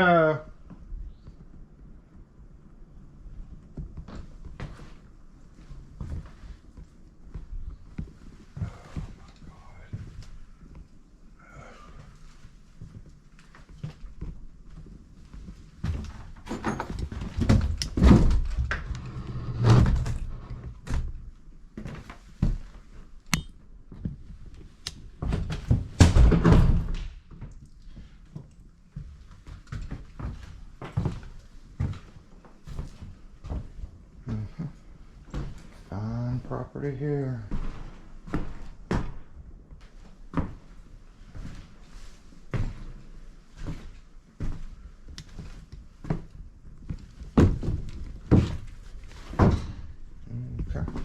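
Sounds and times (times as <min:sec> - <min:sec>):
low rumbling: 0:18.1 - 0:20.9
sharp click: 0:23.3 - 0:23.6.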